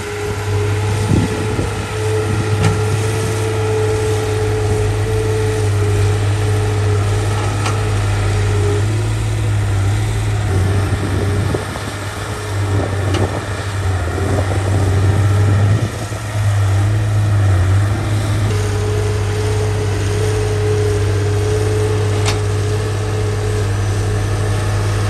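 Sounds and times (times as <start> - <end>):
diesel engine droning: 0.0 - 25.0.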